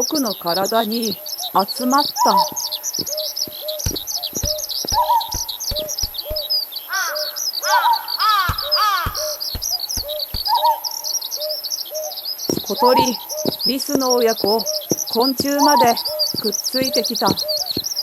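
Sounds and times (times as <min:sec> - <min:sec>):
birds chirping: 0:00.0 - 0:18.0
short low blips with thud: 0:03.9 - 0:06.5.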